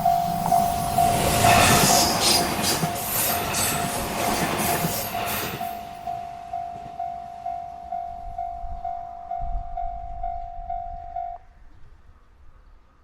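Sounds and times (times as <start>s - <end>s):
railway crossing bell ringing: 0.0s - 11.4s
train rumbling: 0.0s - 12.9s.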